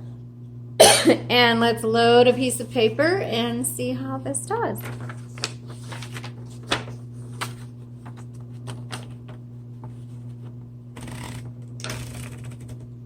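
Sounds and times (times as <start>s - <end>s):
electric typewriter motor humming: 4.6s - 13.0s
paper rustling: 4.8s - 12.7s
typewriter clicks: 11.0s - 12.8s.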